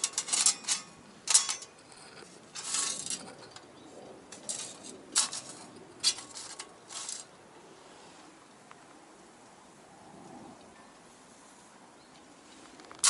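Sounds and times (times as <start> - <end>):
light metal clinking: 0.0 - 3.7.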